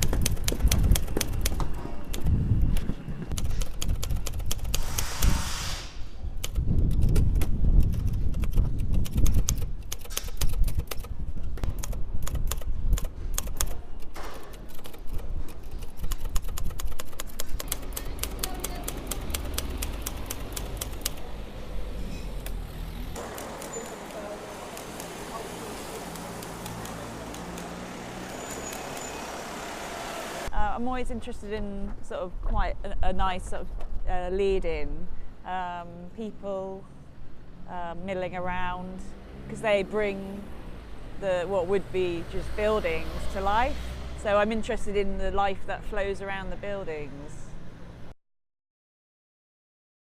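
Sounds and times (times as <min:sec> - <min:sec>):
typewriter keys striking: 0:00.0 - 0:01.6, 0:03.4 - 0:04.8, 0:06.4 - 0:11.1, 0:11.8 - 0:21.2, 0:23.2 - 0:25.2.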